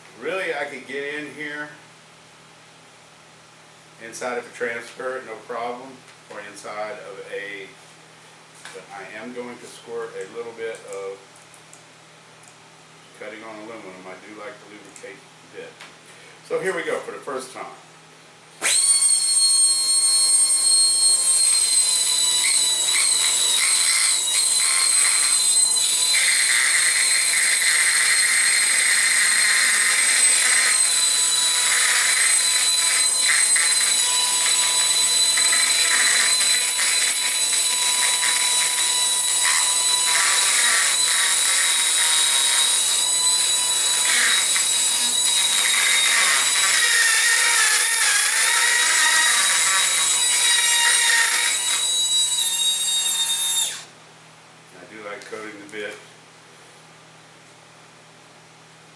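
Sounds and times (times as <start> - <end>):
air die grinder whining: 18.6 - 53.9
grinder cutting metal: 18.6 - 53.9.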